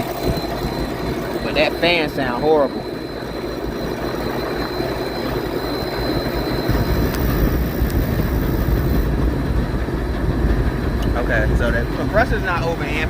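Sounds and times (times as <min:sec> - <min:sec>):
air conditioning unit running: 0:00.0 - 0:13.0
thin high whine: 0:00.0 - 0:13.0
low rumble: 0:04.9 - 0:13.0.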